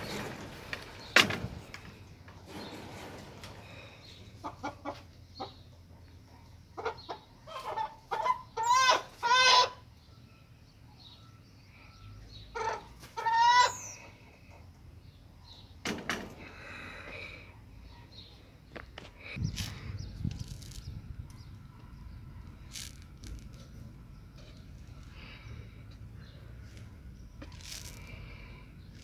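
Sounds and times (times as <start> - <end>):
chickens clucking: 3.2 - 9.8, 12.5 - 14.6
chicken wavering calls: 6.8 - 9.9, 12.5 - 14.2.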